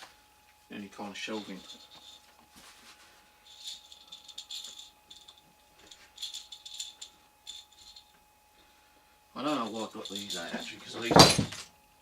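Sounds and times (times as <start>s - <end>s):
toys rattling: 1.3s - 2.3s, 3.5s - 8.1s, 9.7s - 11.7s.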